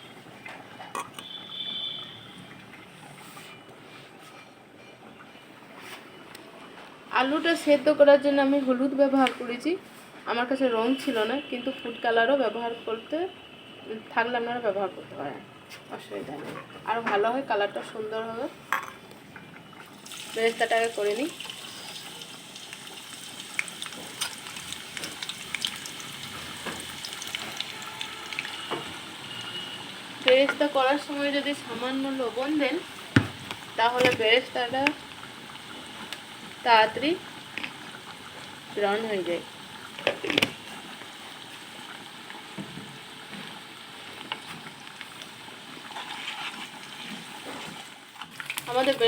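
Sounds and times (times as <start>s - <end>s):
onions sizzling in oil: 19.9s - 49.0s.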